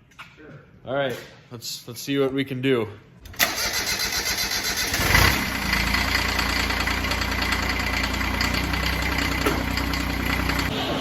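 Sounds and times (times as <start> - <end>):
tractor starter cranking: 3.2 - 10.7
tractor engine idling: 3.4 - 10.9.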